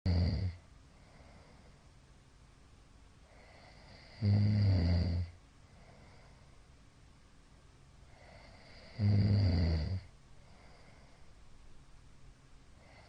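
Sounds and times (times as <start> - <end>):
man snoring: 0.1 - 0.6, 3.4 - 5.3, 8.2 - 10.1.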